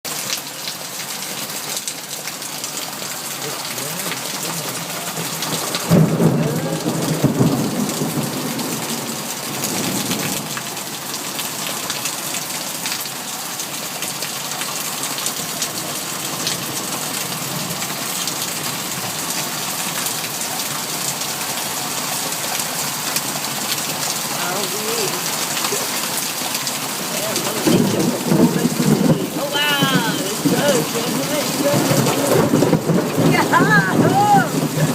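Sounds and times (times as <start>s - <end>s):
heavy rain pouring: 0.0s - 34.9s
thunderclap rumbling: 4.5s - 10.7s, 26.9s - 34.9s
roll of thunder: 5.8s - 10.5s, 27.3s - 34.9s.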